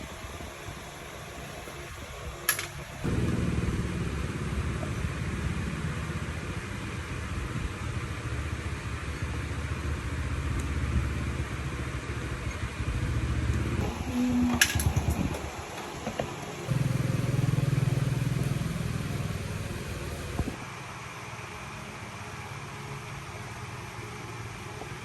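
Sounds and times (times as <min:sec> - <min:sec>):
low steady motor running: 0:00.0 - 0:20.6.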